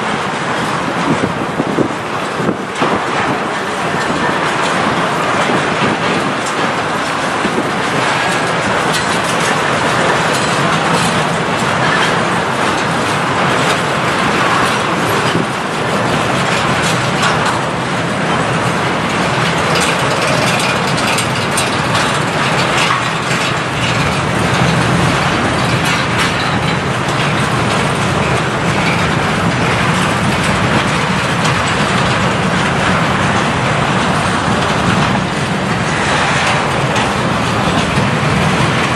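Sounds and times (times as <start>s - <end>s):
train wheels clattering on rails: 0.0s - 38.9s.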